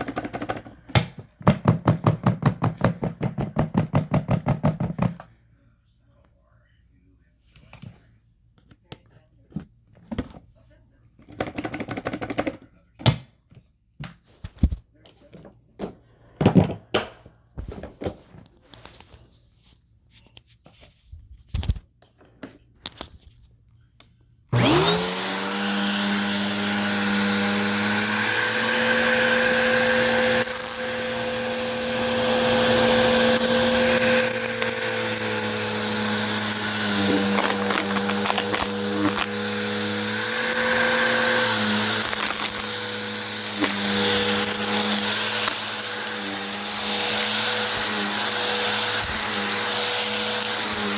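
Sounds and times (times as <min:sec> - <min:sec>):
vacuum cleaner motor whining: 0:24.6 - 0:50.9.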